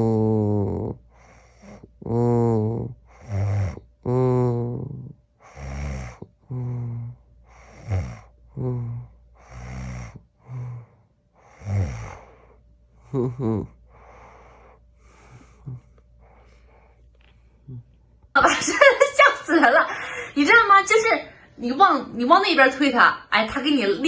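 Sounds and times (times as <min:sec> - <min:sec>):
man groaning in his sleep: 0:00.0 - 0:12.3, 0:13.0 - 0:14.4
rough breathing: 0:00.0 - 0:18.0.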